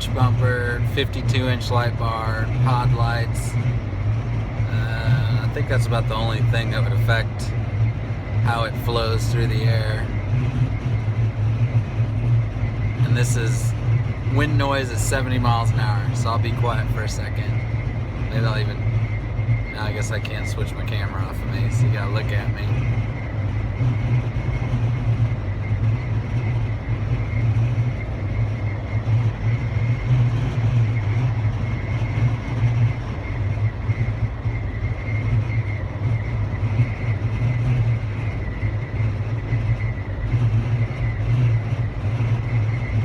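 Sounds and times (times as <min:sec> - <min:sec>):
wind and road noise in car: 0:00.0 - 0:43.0.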